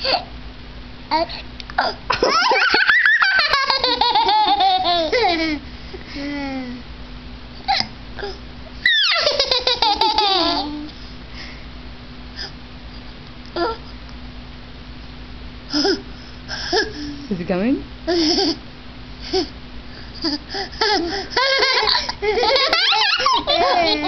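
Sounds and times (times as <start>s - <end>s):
girl laughing: 2.1s - 6.8s, 8.9s - 10.9s, 18.1s - 18.6s, 20.2s - 24.0s.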